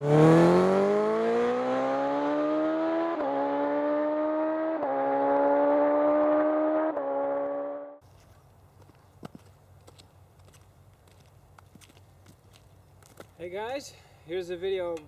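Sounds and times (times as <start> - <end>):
motorcycle engine accelerating: 0.0 - 8.0.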